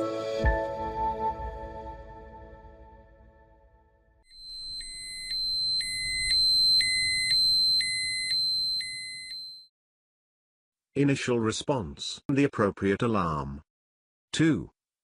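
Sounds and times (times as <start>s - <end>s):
fire alarm high-pitched tone: 4.3s - 9.7s
fire alarm pulsing beep: 4.3s - 9.7s.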